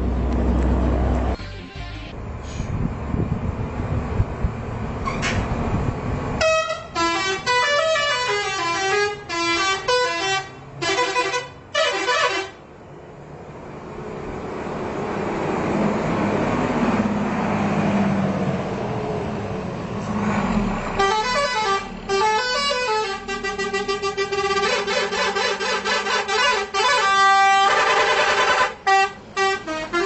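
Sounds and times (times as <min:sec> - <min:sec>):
vehicle engine approaching: 0:00.0 - 0:06.4, 0:12.7 - 0:25.6
musical air horns playing a tune: 0:06.4 - 0:12.6, 0:21.0 - 0:30.0.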